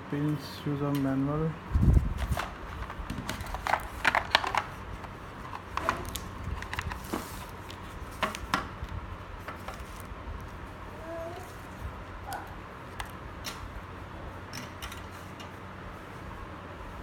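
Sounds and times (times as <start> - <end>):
paper rustle: 1.9 - 10.6.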